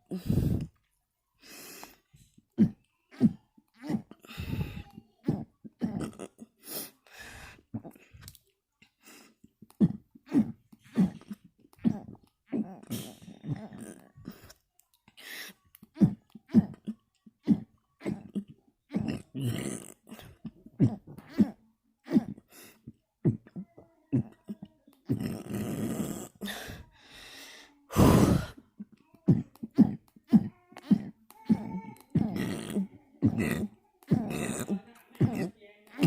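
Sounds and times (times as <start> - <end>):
person burping: 2.6 - 6.5, 9.7 - 14.5, 16.0 - 22.5, 23.2 - 26.8, 27.9 - 36.0.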